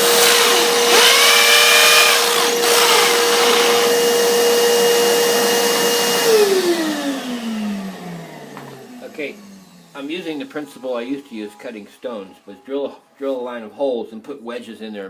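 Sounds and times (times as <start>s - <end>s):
electric drill boring into masonry: 0.0s - 9.9s.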